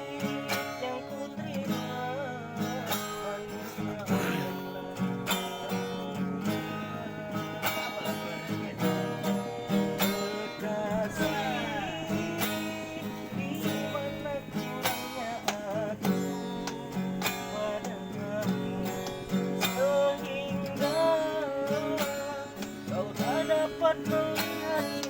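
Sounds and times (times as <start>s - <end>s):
acoustic guitar strumming: 0.0s - 25.0s
person singing: 0.0s - 25.0s.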